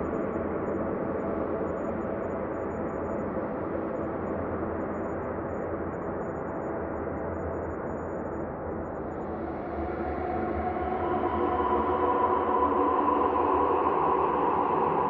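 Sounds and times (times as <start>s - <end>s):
ambient drone: 8.8s - 15.0s.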